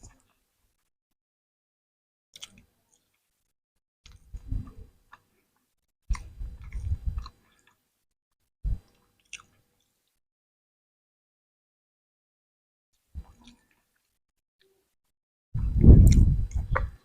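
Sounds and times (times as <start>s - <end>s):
chewing and biting food: 6.1s - 7.8s.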